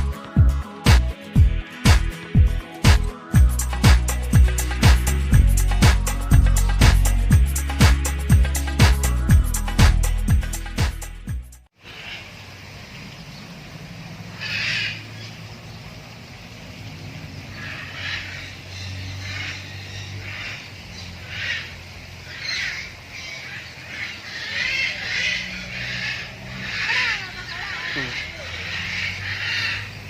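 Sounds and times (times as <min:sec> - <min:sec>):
short animal calls: 0:24.3 - 0:29.9.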